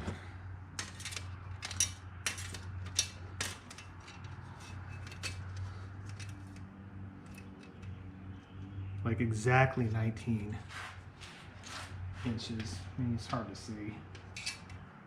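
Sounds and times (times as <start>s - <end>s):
metal blades clinking: 14.3s - 14.7s.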